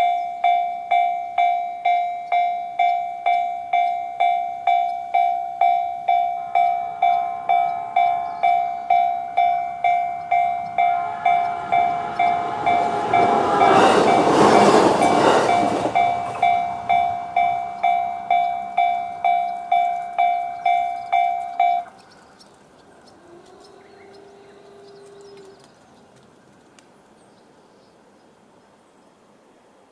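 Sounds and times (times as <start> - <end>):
railway crossing alarm ringing: 0.0 - 25.5
electric train passing: 0.0 - 29.9
low hum: 1.6 - 22.1.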